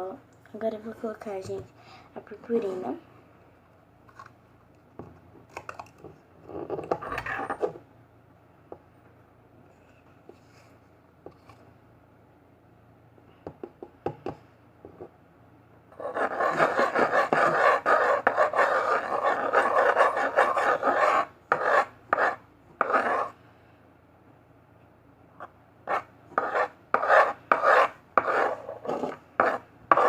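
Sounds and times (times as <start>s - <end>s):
scraping on tabletop: 6.4s - 7.8s, 16.0s - 23.4s, 25.4s - 30.0s.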